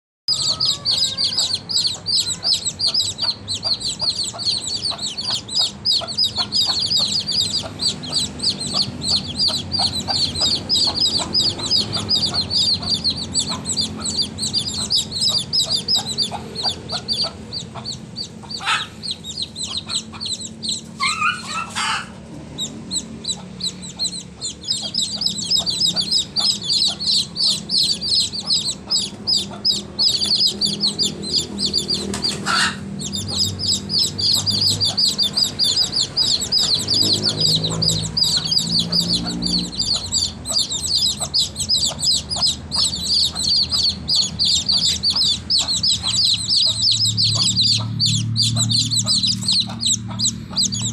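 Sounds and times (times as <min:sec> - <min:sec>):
baby chicks peeping: 0:00.3 - 0:50.9
lower bird call: 0:00.3 - 0:50.9.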